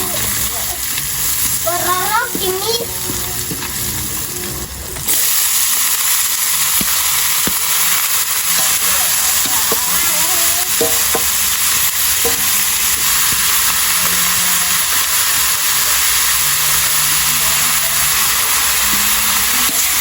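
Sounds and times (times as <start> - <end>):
faint voices: 0.0 - 4.8, 7.7 - 11.3, 15.5 - 20.0
loud steady hiss: 0.0 - 20.0.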